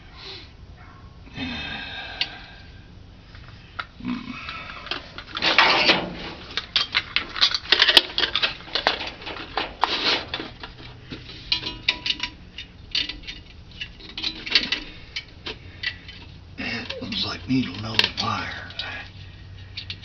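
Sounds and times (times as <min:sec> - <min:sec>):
metal clinks and scrapes: 0:04.6 - 0:20.0.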